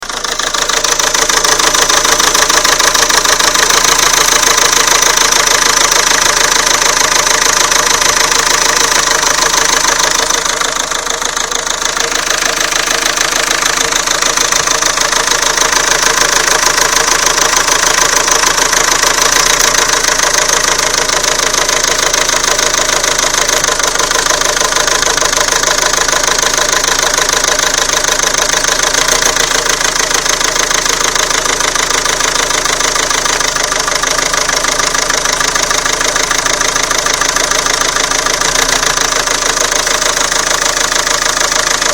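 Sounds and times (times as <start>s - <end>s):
diesel engine idling with knock: 0.0s - 41.9s.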